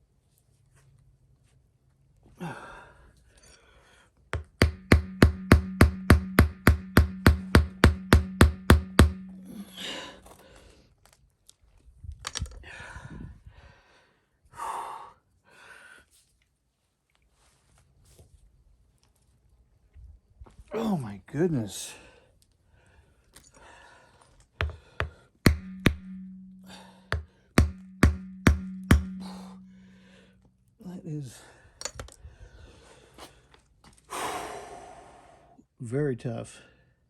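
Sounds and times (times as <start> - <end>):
sharp knocks: 4.4 - 9.6, 24.6 - 29.8
heavy breathing and sighs: 31.3 - 35.6.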